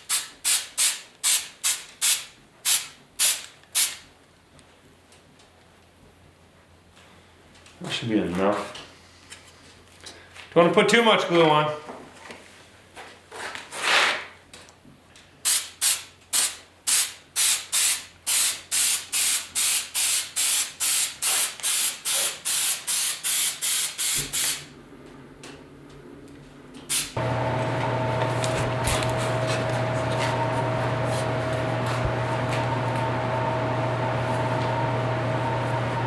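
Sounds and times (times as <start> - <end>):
aerosol spray bursts: 0.1 - 4.0, 15.5 - 24.6
machine hum: 27.2 - 36.0.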